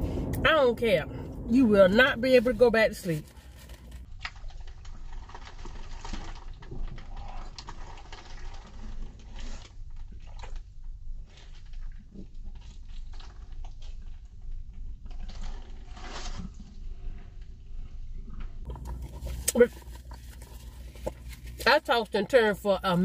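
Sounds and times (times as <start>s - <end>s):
chewing and lip smacking: 18.3s - 21.6s.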